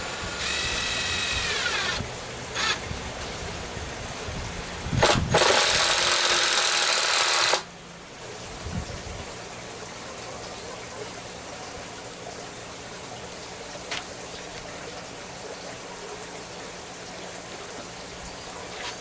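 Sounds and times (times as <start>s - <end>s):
power tool running: 0.0s - 2.8s, 5.0s - 7.7s
low steady hiss: 0.0s - 19.0s.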